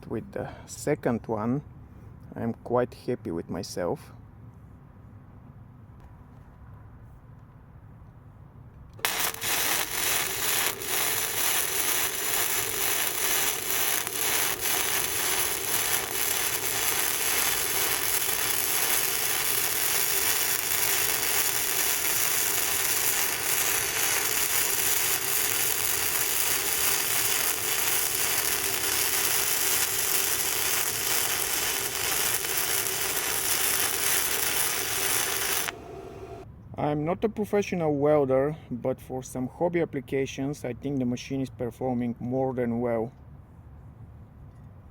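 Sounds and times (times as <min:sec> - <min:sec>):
welder hum: 0:09.0 - 0:36.5
welding arc crackling: 0:09.0 - 0:36.5.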